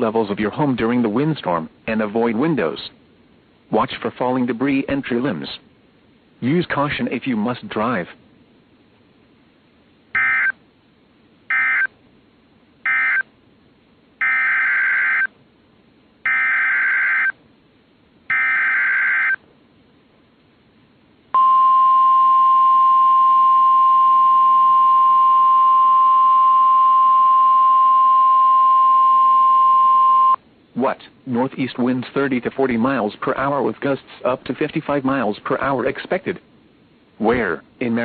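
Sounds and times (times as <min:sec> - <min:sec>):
warning alarm tone: 0:10.2 - 0:10.6, 0:11.5 - 0:11.9, 0:12.8 - 0:13.2, 0:14.2 - 0:15.3, 0:16.2 - 0:17.4, 0:18.3 - 0:19.4.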